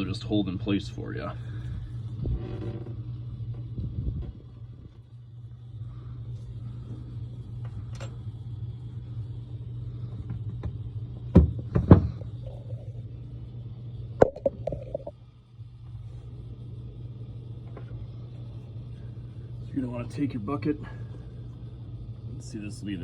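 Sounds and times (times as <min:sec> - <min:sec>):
low hum: 0:12.2 - 0:19.7.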